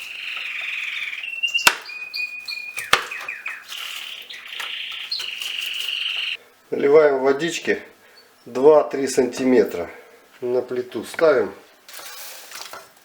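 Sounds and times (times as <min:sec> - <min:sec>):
high chirping trill: 0:00.0 - 0:06.4.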